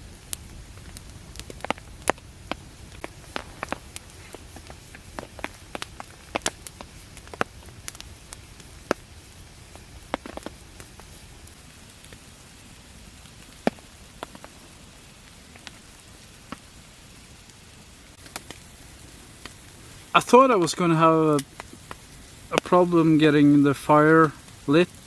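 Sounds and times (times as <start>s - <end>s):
steady rain hiss: 0.0s - 25.0s
sharp ticks and pops: 0.2s - 12.2s, 13.2s - 16.8s, 17.4s - 25.0s
sharp cracks: 0.3s - 9.1s, 9.7s - 12.2s, 18.2s - 23.3s.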